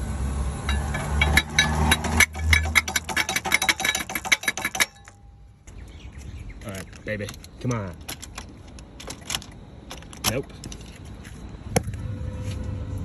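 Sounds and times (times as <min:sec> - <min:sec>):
starter motor clicking and rattling: 0:00.7 - 0:05.1.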